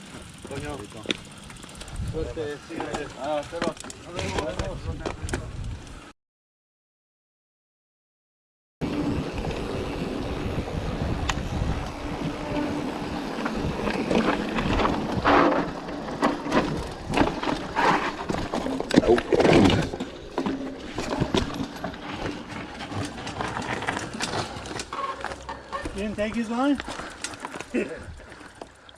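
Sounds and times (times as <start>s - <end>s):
bike wheels clattering on rock: 0.0s - 5.3s, 12.0s - 28.6s
low wind rumble: 1.2s - 2.7s, 8.8s - 18.6s.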